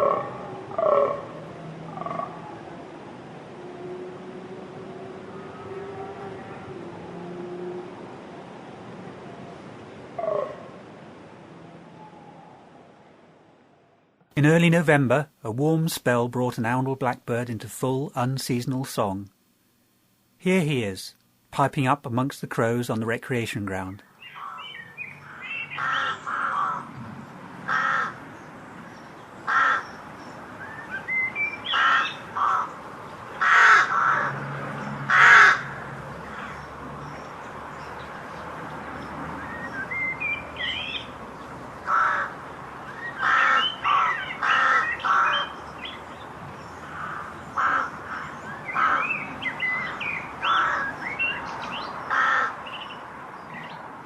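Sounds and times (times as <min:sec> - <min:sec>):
crows cawing: 0:00.0 - 0:02.4, 0:24.3 - 0:27.0, 0:27.6 - 0:28.3, 0:29.4 - 0:30.0, 0:31.6 - 0:36.7, 0:41.8 - 0:46.0, 0:46.8 - 0:51.1, 0:52.0 - 0:52.9
blackbird singing: 0:23.8 - 0:26.8, 0:28.8 - 0:32.7, 0:36.3 - 0:41.2, 0:42.8 - 0:53.8.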